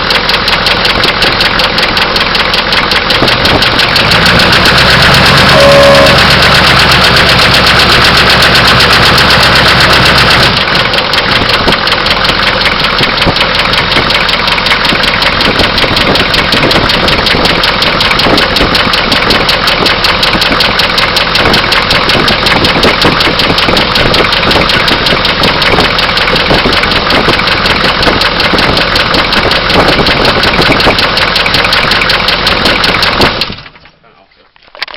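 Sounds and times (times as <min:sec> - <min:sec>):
diesel engine knocking: 0:00.0 - 0:33.8
low hum: 0:03.8 - 0:11.0.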